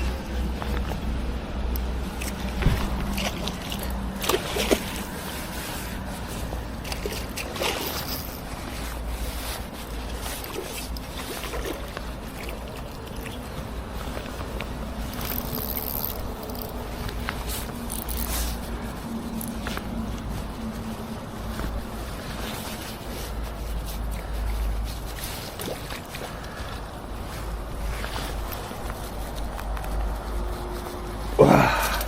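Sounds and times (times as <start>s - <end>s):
steady low rumble: 0.0s - 25.5s
water sloshing and splashing: 0.0s - 32.0s.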